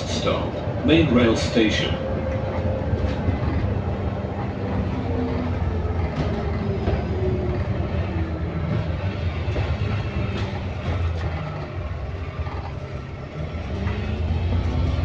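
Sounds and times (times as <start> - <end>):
bus diesel engine droning: 0.0 - 15.0
bodywork rattling and knocking: 2.1 - 13.1.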